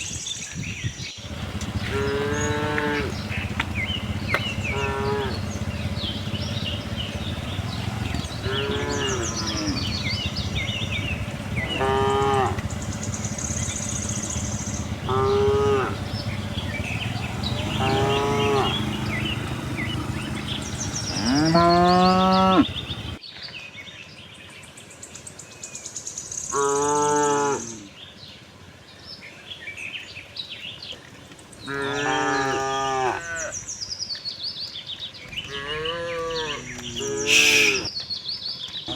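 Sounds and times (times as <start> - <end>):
background rumble: 1.2 - 23.2
cattle mooing: 1.3 - 23.2, 35.4 - 37.9.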